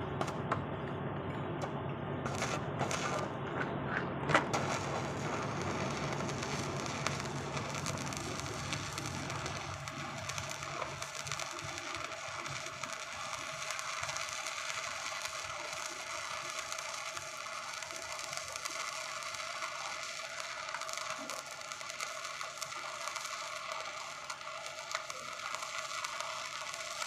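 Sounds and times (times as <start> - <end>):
welding arc crackling: 2.2 - 3.4, 4.3 - 27.0
sharp crack: 4.3 - 27.0.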